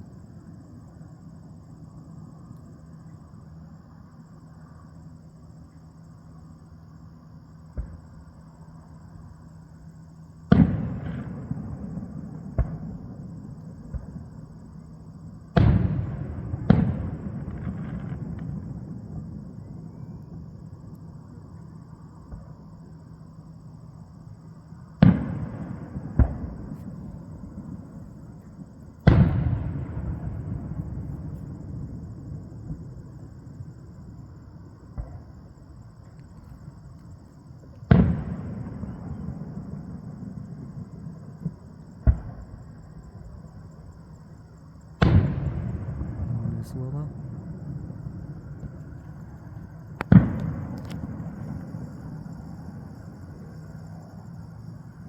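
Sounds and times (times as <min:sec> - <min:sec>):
steady low hum: 0:00.0 - 0:55.0
fireworks booming: 0:07.7 - 0:08.2, 0:10.5 - 0:14.9, 0:15.5 - 0:20.8, 0:24.9 - 0:35.9, 0:37.7 - 0:44.2, 0:44.9 - 0:53.6.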